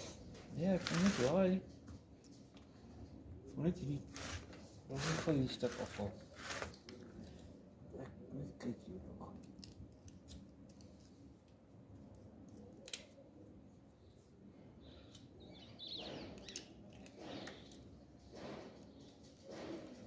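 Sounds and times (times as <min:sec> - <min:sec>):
scraping and rasping: 0:00.6 - 0:01.5, 0:04.0 - 0:06.9.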